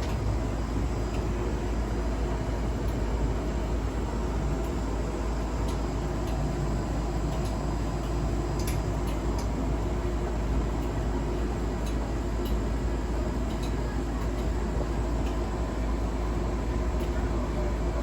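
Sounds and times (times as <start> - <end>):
appliance humming and rumbling: 0.0 - 18.0
sharp irregular clicks: 7.3 - 9.5.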